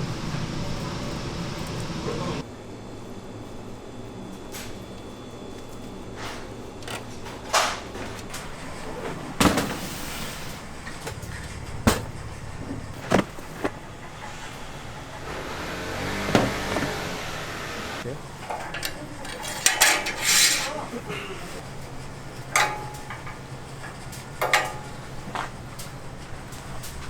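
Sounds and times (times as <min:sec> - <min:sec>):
kitchen knocks and clatters: 0:06.8 - 0:17.4, 0:18.0 - 0:27.0
steady low hum: 0:08.0 - 0:27.0.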